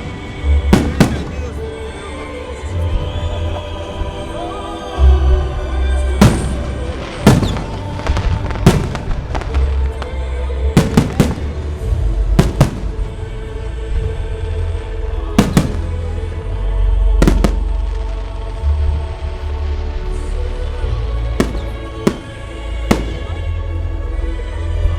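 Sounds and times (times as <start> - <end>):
fireworks bangs: 0.0 - 2.3, 6.1 - 10.2, 10.8 - 13.4, 15.4 - 16.4, 17.2 - 18.9, 21.4 - 23.7
music playing: 0.0 - 24.9.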